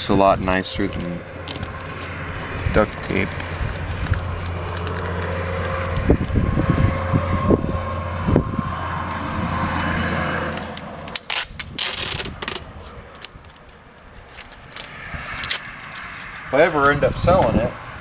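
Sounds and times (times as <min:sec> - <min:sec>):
box tape ripped off roll: 0:10.6 - 0:13.6.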